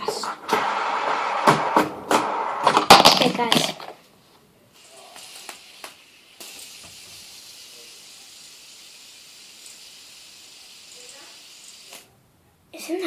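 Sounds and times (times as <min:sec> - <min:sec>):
fidget spinner whirring: 0:04.8 - 0:12.1.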